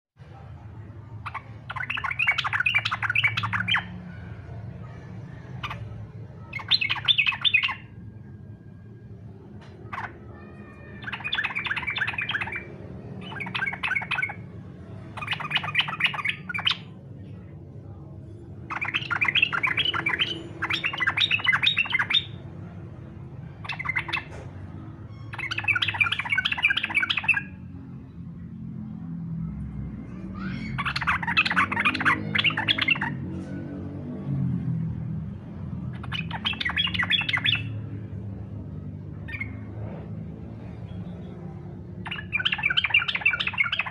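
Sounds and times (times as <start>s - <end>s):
bulbul harsh chattering song: 0.8s - 8.3s, 9.8s - 27.7s, 30.1s - 33.2s, 35.8s - 37.9s, 40.9s - 43.9s.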